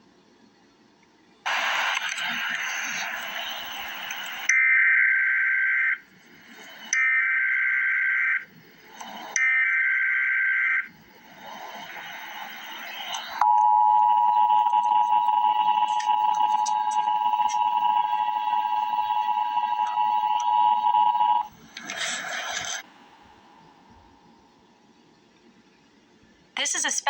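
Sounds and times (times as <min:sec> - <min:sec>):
steady dual tone attention signal: 0:09.1 - 0:21.5
buzzy two-tone data signal: 0:10.6 - 0:21.5.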